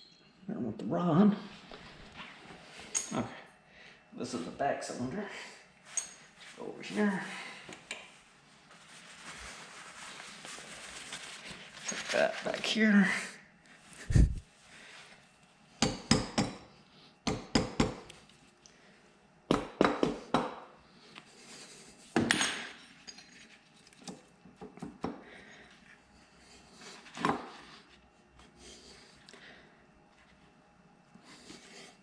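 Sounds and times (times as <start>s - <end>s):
metal parts and tools clattering: 22.3s - 24.0s.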